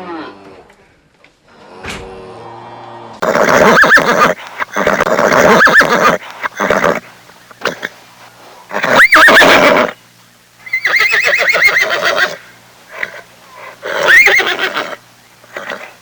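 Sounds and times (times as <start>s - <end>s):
horse neighing: 3.2s - 8.0s, 8.7s - 10.0s, 10.6s - 16.0s
horse snorting: 3.2s - 10.0s, 10.8s - 16.0s.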